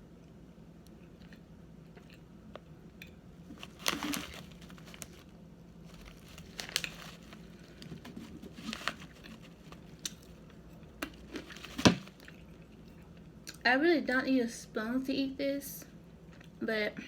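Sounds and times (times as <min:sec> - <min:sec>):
crunchy squeaky crunches: 0:03.4 - 0:10.1.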